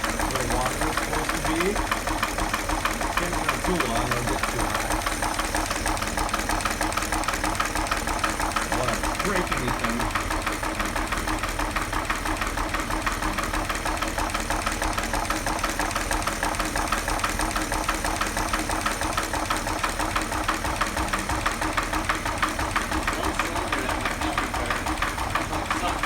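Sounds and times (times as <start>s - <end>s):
engine running with rapid knock: 0.0s - 26.0s.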